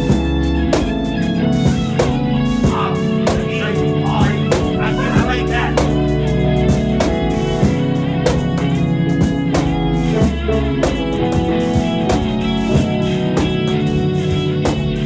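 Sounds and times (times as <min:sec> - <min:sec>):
bass line: 0:00.0 - 0:15.0
electric guitar playing: 0:00.0 - 0:15.0
steady drum beat: 0:00.0 - 0:15.0.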